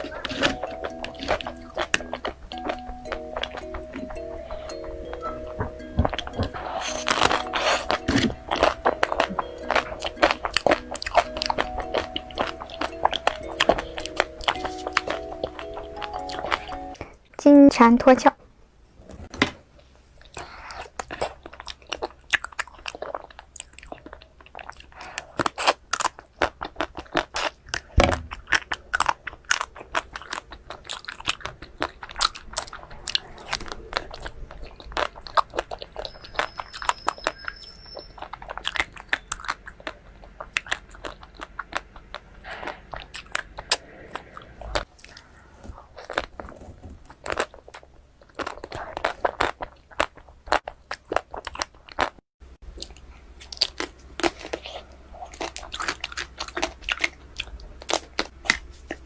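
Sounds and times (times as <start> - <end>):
crunchy ice cream bites: 20.4 - 59.0.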